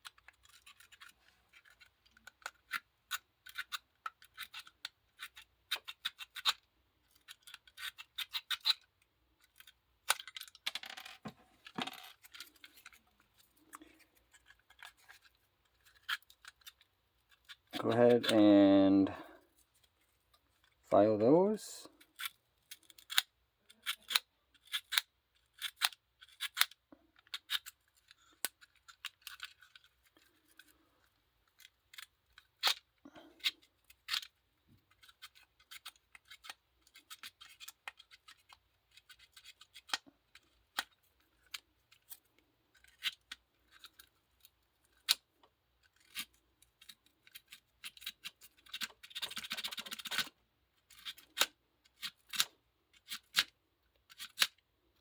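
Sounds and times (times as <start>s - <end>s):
nail file scraping metal contacts: 0.0s - 10.5s, 13.7s - 18.4s, 22.0s - 30.7s, 34.9s - 45.2s, 45.8s - 50.3s.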